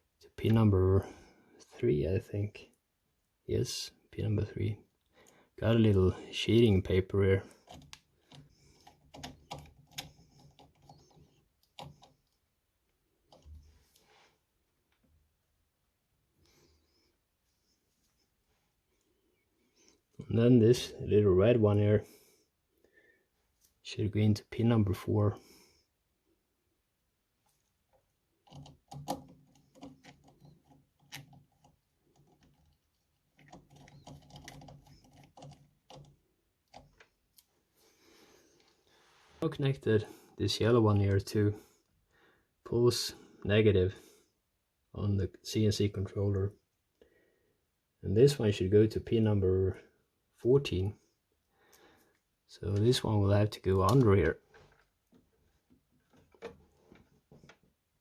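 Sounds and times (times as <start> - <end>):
small clicks and handling noises: 7.5 - 14.1, 27.4 - 37.6, 53.6 - 57.8.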